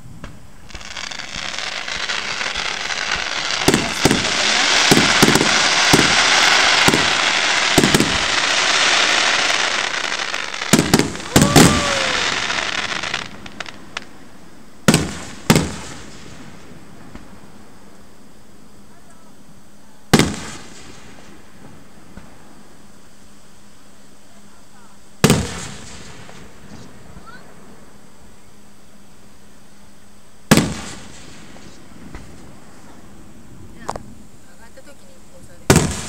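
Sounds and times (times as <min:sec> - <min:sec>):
fireworks crackling: 0:00.0 - 0:17.5, 0:20.1 - 0:22.5, 0:24.7 - 0:27.9, 0:30.4 - 0:36.0
firework bangs: 0:00.1 - 0:14.2, 0:14.8 - 0:17.4, 0:20.1 - 0:22.4, 0:25.2 - 0:27.5, 0:30.5 - 0:33.0, 0:35.5 - 0:36.0.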